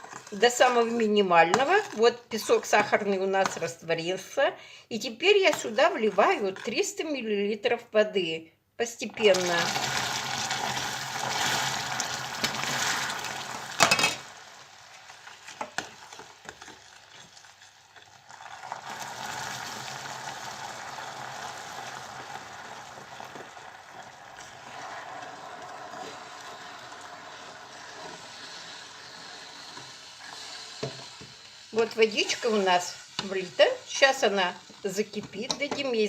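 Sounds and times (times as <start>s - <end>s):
caramel sizzling and bubbling: 0.0s - 3.6s, 9.2s - 36.0s
water pouring into saucepan: 9.3s - 30.9s.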